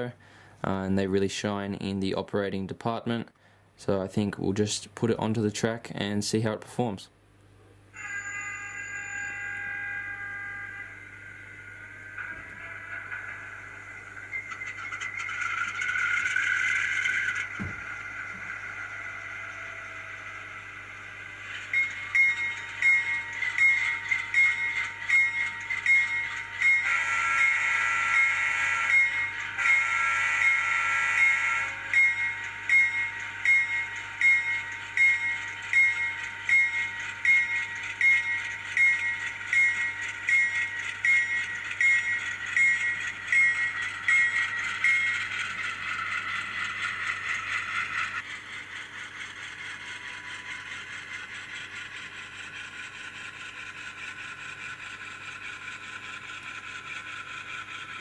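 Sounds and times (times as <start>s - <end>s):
locomotive bell ringing: 7.9s - 48.7s
locomotive horn blasts: 26.9s - 28.1s.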